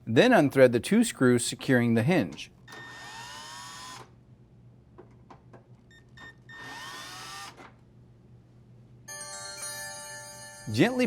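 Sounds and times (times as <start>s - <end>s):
drill driver motor whine: 2.7s - 4.1s, 6.5s - 7.6s.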